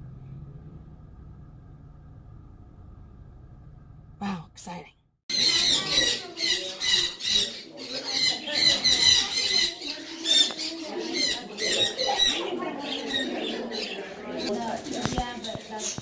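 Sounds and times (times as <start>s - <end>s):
caged birds chirping and squawking: 5.3s - 16.0s.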